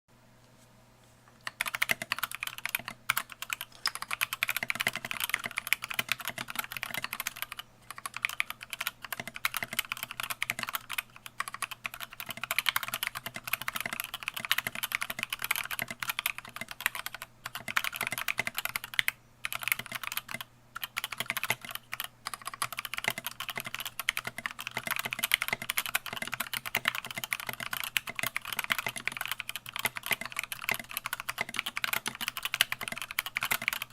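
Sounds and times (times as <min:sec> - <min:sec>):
fast mechanical keyboard typing: 0:01.4 - 0:33.9.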